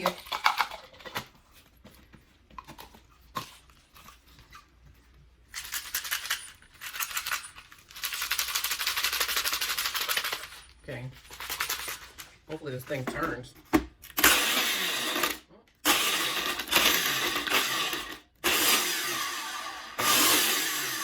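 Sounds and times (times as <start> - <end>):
blender crushing ice: 0.0 - 1.2, 14.0 - 21.0.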